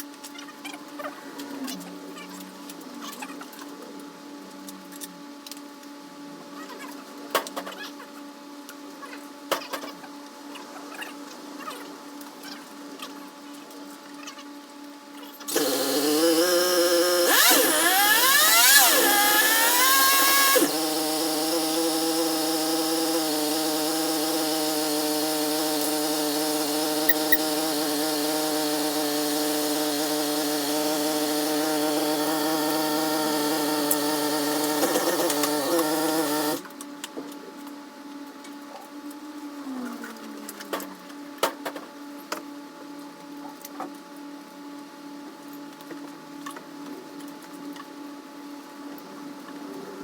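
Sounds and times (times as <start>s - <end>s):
electric motor whine: 15.5s - 36.6s.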